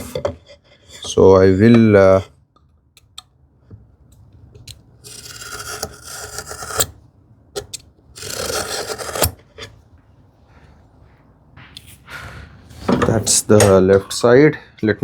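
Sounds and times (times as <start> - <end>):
scraping on wood: 4.6 - 7.0, 7.6 - 9.8.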